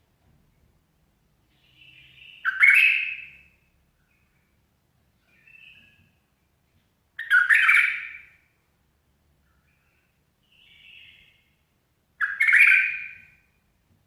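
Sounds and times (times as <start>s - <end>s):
bird harsh calls: 1.6s - 3.6s, 7.2s - 8.5s, 9.7s - 11.6s, 12.2s - 13.5s.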